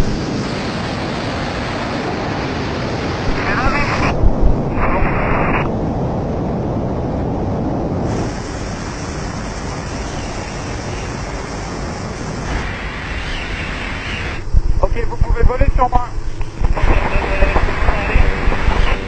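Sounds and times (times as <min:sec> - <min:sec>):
wind buffeting microphone: 0:00.0 - 0:19.0
two-way radio noise: 0:03.2 - 0:05.7, 0:12.4 - 0:19.0.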